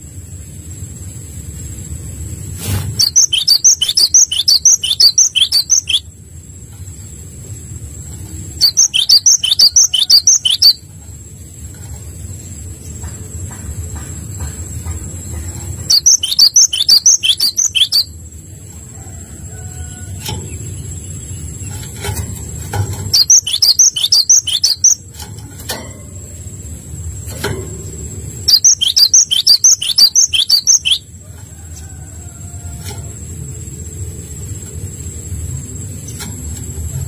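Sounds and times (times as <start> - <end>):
low background rumble: 0.0 - 37.0
songbird singing high notes: 3.0 - 6.1, 8.5 - 10.9, 15.9 - 18.2, 23.2 - 25.0, 28.5 - 31.1.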